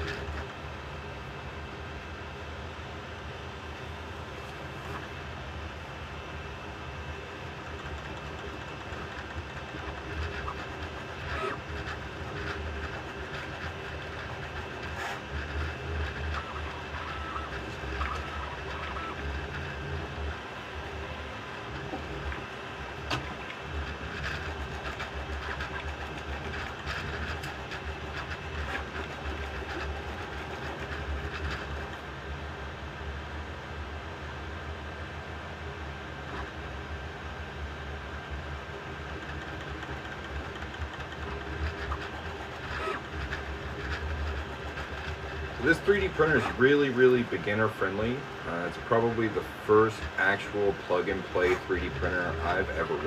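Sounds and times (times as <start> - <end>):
printer fans humming: 0.0 - 53.0
stepper motors whirring: 7.4 - 32.2, 39.0 - 53.0.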